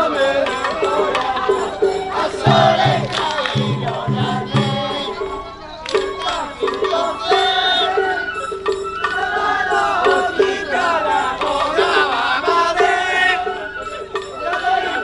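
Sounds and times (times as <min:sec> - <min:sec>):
crowd voices: 0:00.7 - 0:07.2
high bamboo flute melody: 0:01.7 - 0:10.9, 0:12.9 - 0:15.0
steady drum beat: 0:02.4 - 0:05.4.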